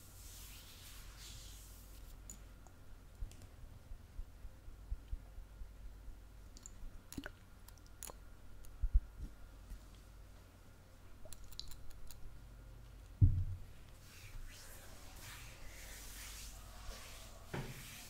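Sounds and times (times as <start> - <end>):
low thump: 13.2 - 13.7.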